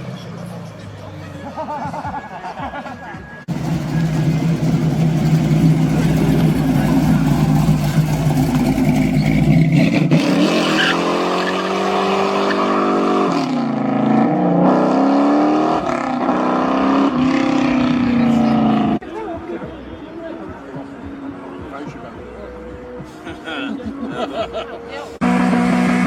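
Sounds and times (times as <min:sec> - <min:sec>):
car engine revving: 0:03.5 - 0:19.0, 0:25.2 - 0:26.0.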